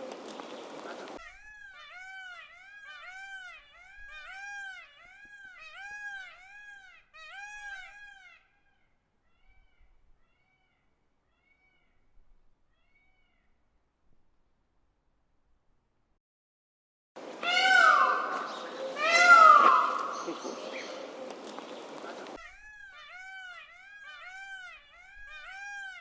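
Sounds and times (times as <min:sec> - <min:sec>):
peacock calling: 0:17.2 - 0:26.0.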